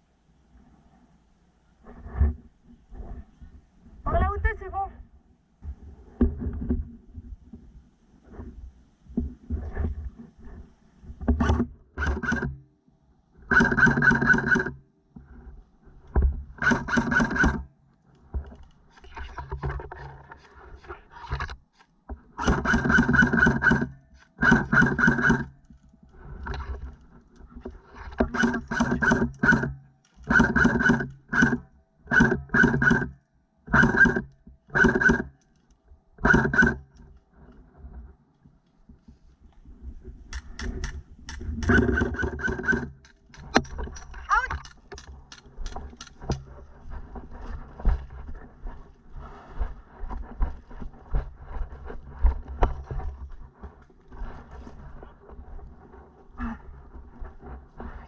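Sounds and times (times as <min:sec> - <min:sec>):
airsoft rifle full-auto bursts: 0:22.4 - 0:25.5.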